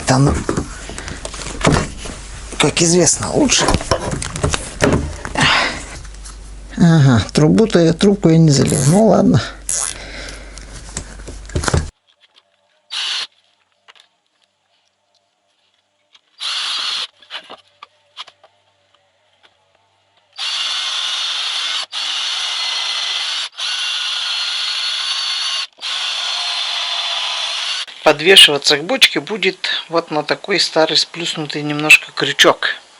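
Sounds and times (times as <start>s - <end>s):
scraping and handling noises: 3.4s - 6.5s, 10.6s - 16.4s, 17.1s - 20.3s
small power tool motor running: 12.9s - 13.3s, 16.4s - 17.1s, 20.4s - 27.9s.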